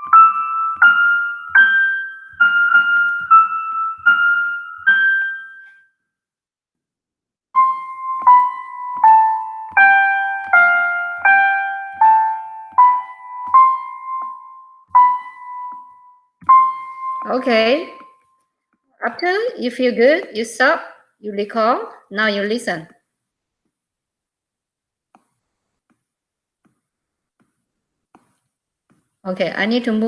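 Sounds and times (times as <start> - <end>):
keyboard playing slow melody: 0.0 - 5.8, 7.6 - 18.3.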